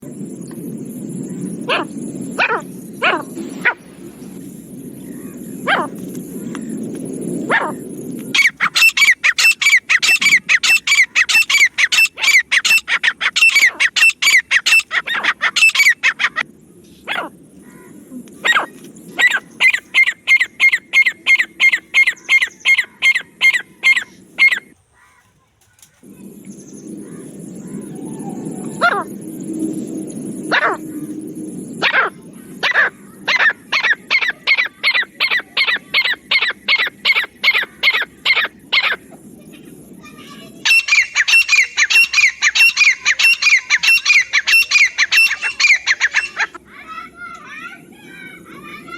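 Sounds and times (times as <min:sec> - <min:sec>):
francolin calling: 0:07.5 - 0:24.7, 0:40.5 - 0:46.6.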